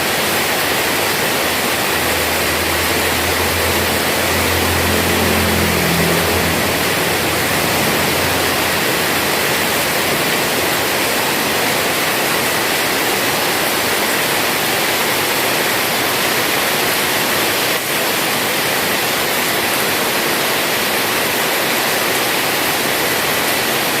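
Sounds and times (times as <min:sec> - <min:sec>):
heavy rain falling: 0:00.0 - 0:24.0
low hum: 0:00.1 - 0:12.2.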